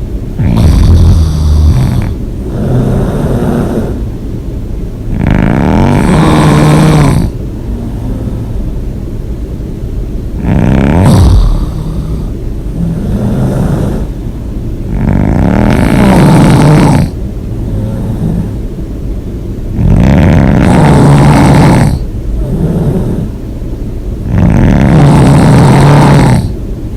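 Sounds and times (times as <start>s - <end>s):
quiet breaths: 0.0s - 4.2s, 5.1s - 9.5s, 10.3s - 19.2s, 19.8s - 26.7s
person snoring loudly: 0.4s - 4.0s, 5.1s - 8.6s, 10.4s - 14.1s, 14.9s - 18.6s, 19.8s - 23.3s, 24.3s - 26.6s.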